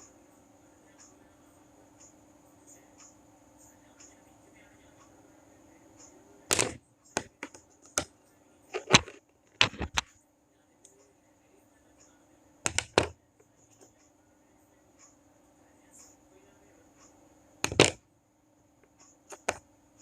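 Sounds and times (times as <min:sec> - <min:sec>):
packaging clicks and knocks: 0:06.5 - 0:07.6, 0:08.8 - 0:10.0, 0:17.7 - 0:18.0.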